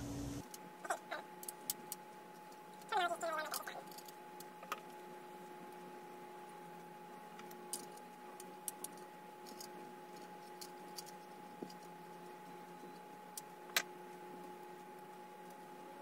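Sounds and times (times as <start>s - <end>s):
steady hum: 0.0s - 16.0s.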